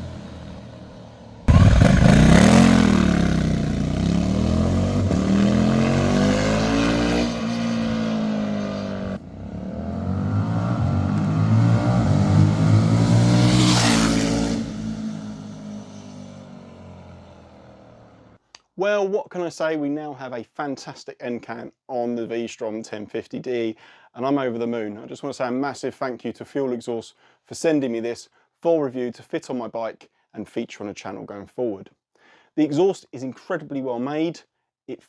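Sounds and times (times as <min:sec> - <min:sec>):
motorcycle accelerating past: 0:00.0 - 0:18.4.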